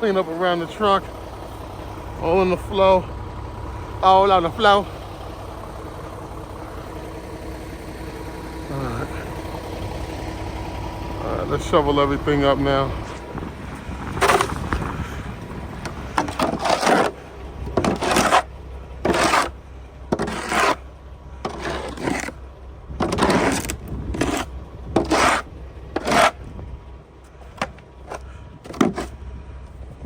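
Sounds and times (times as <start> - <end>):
snow shovel scraping pavement: 14.1 - 22.4, 23.0 - 26.5, 27.4 - 29.2.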